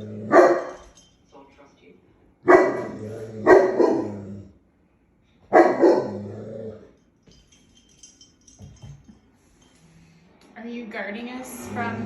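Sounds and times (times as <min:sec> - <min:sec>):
dog barking deeply: 0:02.4 - 0:04.3, 0:05.5 - 0:06.3.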